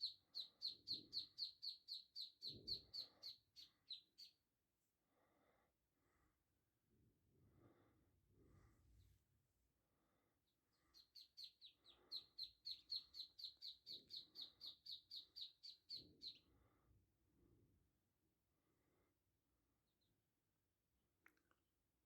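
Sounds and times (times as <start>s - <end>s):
duckling peeping: 0.0s - 4.3s, 11.0s - 16.4s.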